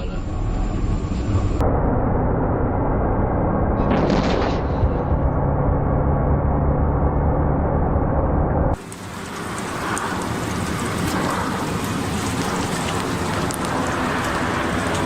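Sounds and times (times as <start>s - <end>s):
loud deep rumble: 0.0s - 8.8s
heavy rain falling: 8.8s - 15.0s
sharp raindrop ticks: 8.8s - 15.0s.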